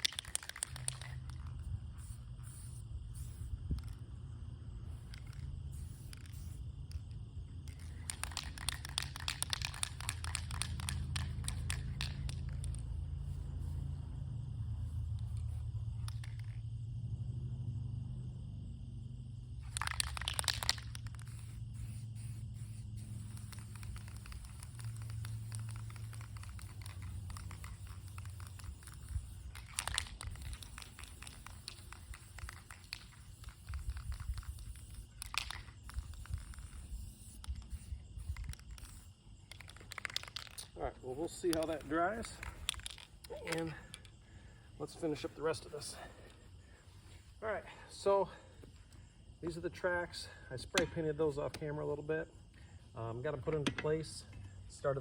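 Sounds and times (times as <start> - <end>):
spray can hissing: 0.0 - 4.0, 4.8 - 14.0, 19.6 - 40.7
faint crackling and handling ticks: 19.6 - 55.0.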